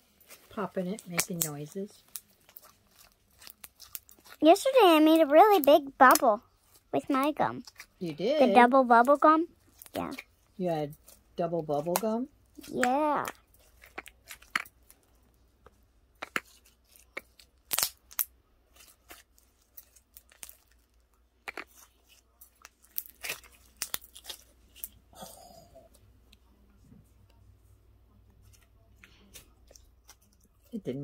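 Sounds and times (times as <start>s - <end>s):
slime snapping and popping: 5.6s - 6.4s, 17.1s - 18.3s, 22.9s - 24.9s.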